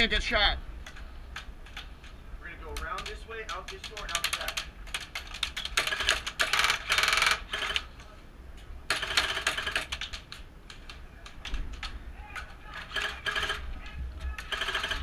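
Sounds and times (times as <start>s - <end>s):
airsoft guns firing: 2.8s - 7.9s, 8.9s - 15.0s.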